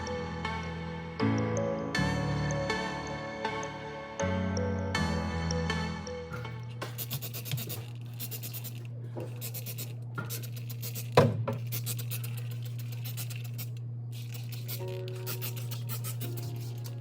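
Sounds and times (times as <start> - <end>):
steady low hum: 5.0 - 17.0
scrubbing on a hard surface: 6.8 - 17.0.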